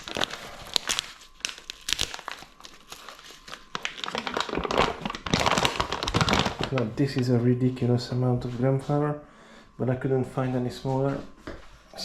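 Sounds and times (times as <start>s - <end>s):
packaging crinkling: 0.0s - 7.3s.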